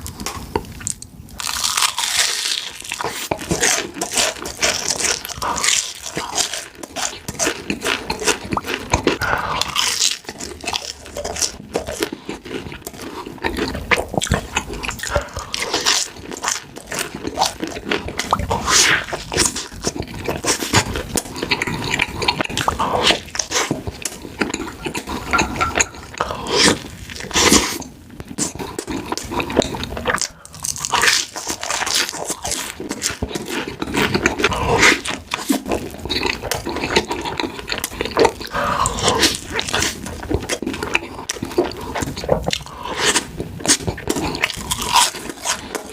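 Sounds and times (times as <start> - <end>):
close chewing with crunches: 0.0 - 45.9.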